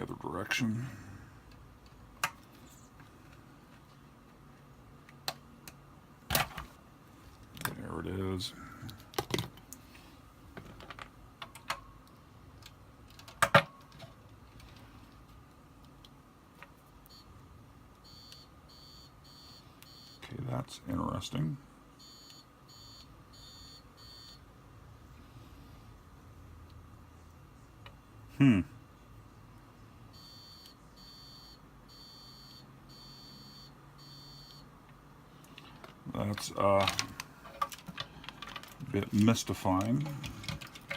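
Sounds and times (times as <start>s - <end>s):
continuity tester beeps: 17.1s - 17.3s, 18.0s - 20.2s, 22.0s - 24.4s, 30.2s - 34.7s.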